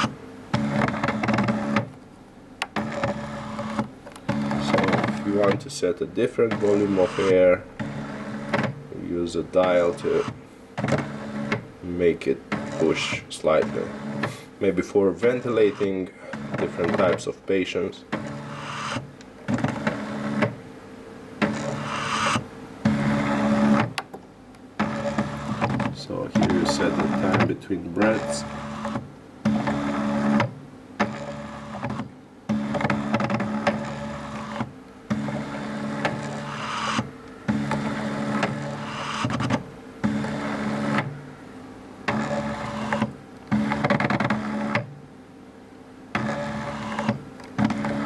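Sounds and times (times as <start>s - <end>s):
motor clicks: 0.0s - 2.0s, 2.6s - 5.7s, 6.4s - 8.8s, 9.6s - 11.7s, 12.5s - 14.4s, 15.2s - 17.3s, 18.1s - 20.6s, 21.4s - 41.2s, 42.0s - 44.9s, 46.1s - 48.0s
stepper motor whining: 2.6s - 5.6s, 6.3s - 14.4s, 18.1s - 20.6s, 21.4s - 24.0s, 24.8s - 41.3s.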